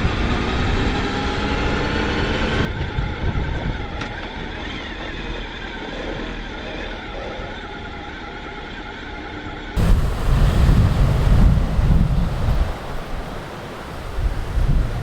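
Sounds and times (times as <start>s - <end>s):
motor vehicle engine drone: 9.8s - 15.0s.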